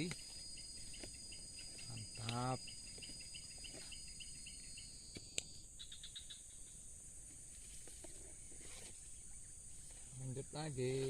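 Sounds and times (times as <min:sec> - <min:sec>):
insects chirping and droning: 0:00.0 - 0:11.0
sharp click: 0:02.2 - 0:02.4.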